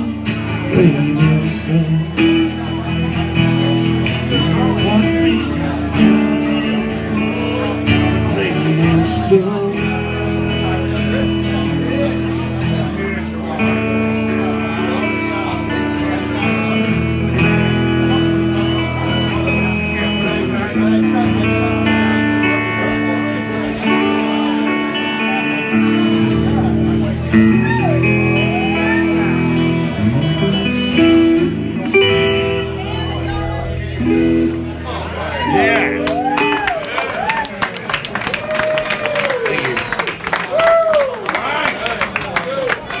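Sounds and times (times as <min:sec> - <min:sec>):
acoustic guitar strumming: 0:00.0 - 0:36.8.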